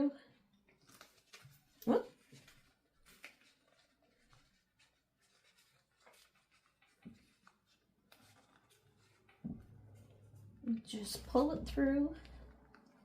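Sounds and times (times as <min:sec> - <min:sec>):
strap rustling: 0:00.7 - 0:10.6.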